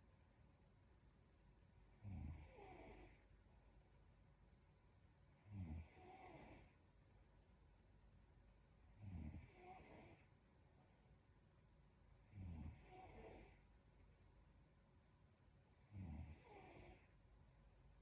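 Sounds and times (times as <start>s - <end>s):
woman snoring: 2.0s - 3.2s, 5.4s - 6.8s, 9.0s - 10.3s, 12.3s - 13.6s, 15.8s - 17.1s.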